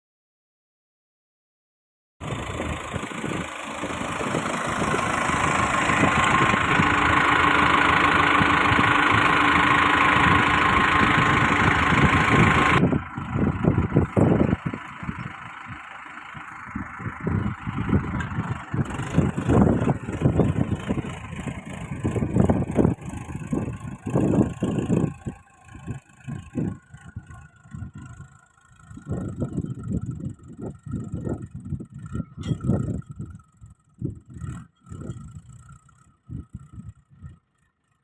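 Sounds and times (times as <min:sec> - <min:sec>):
tractor engine running: 0:02.2 - 0:38.0.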